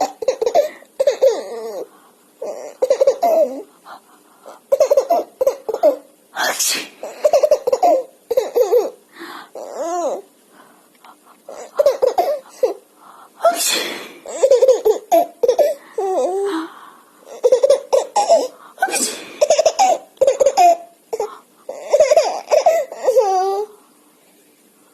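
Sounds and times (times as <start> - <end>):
baby laughing: 0.0 - 3.7, 4.6 - 6.1, 7.0 - 9.0, 11.5 - 12.8, 14.2 - 16.5, 17.3 - 18.6, 19.4 - 23.7
adult sneezing: 6.4 - 7.0, 13.4 - 14.2, 18.8 - 19.4
short breathy bursts: 12.4 - 14.3.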